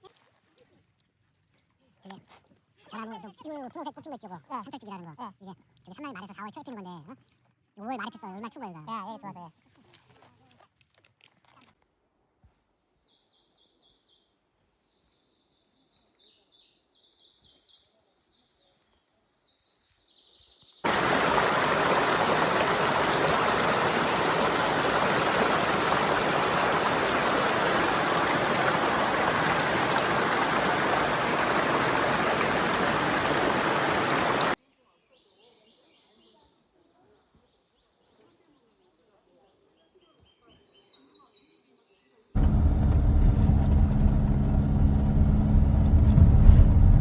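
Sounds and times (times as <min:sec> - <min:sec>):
rushing stream water: 0:20.8 - 0:34.6.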